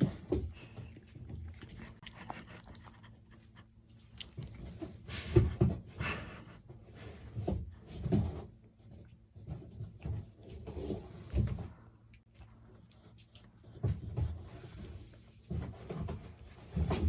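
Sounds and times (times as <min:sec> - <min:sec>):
cat lapping water: 0:00.1 - 0:04.4.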